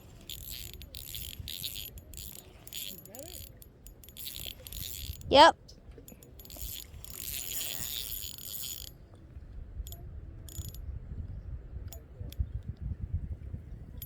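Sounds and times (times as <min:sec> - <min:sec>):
fishing reel clicks: 0:00.0 - 0:05.3, 0:06.1 - 0:09.0, 0:09.9 - 0:10.8
fishing reel whirring: 0:00.0 - 0:05.3, 0:06.1 - 0:09.0, 0:10.5 - 0:10.8.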